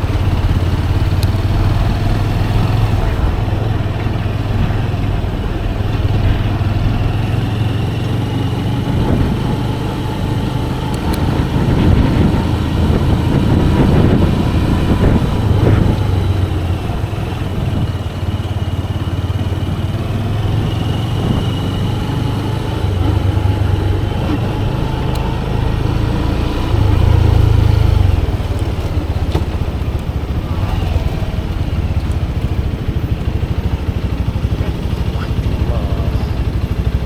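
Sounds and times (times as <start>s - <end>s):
motorcycle engine running: 0.0s - 37.0s.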